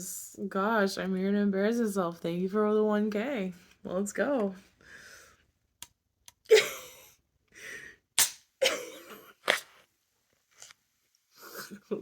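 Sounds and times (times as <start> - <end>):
woman speaking: 0.0 - 4.6
woman coughing: 8.6 - 9.2.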